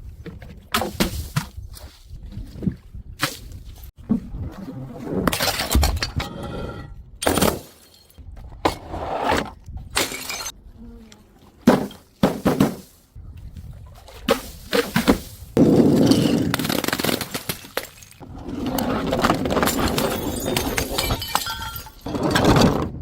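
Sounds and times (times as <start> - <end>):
glass bottles shattering: 10.0 - 10.5, 15.9 - 18.2, 19.4 - 22.3
glass shards tinkling: 19.7 - 22.1.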